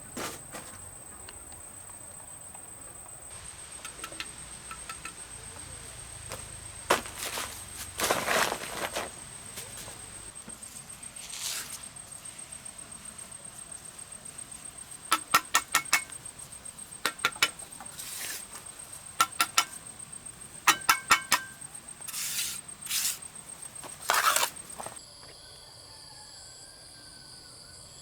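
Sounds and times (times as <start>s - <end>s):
high insect drone: 0.0s - 28.0s
metal tool tapping: 3.8s - 5.7s, 14.7s - 25.0s
scraping sounds: 6.3s - 25.0s.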